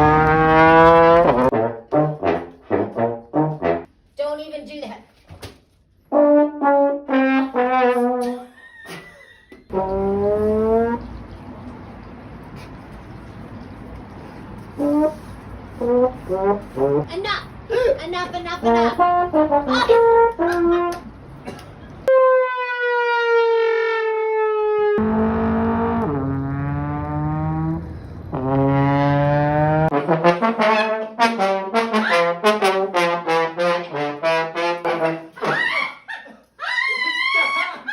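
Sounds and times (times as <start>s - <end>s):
trombone comic sound effects: 0.0s - 3.8s, 6.1s - 8.5s, 9.7s - 11.0s, 24.8s - 35.7s.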